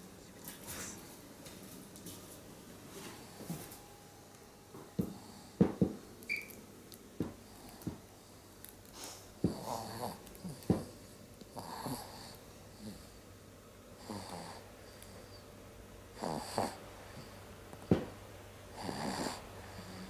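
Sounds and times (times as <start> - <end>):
kitten snoring: 9.5 - 13.2, 14.0 - 14.6, 16.2 - 17.3, 18.7 - 20.0.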